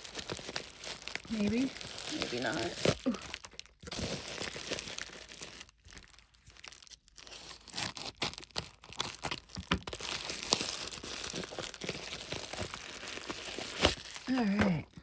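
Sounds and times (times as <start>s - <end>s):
packaging crinkling and tearing: 0.0s - 15.0s.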